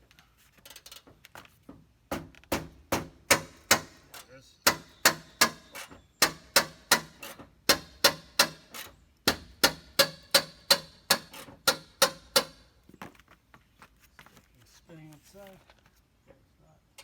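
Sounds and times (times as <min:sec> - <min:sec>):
hammer striking metal: 0:02.5 - 0:12.6.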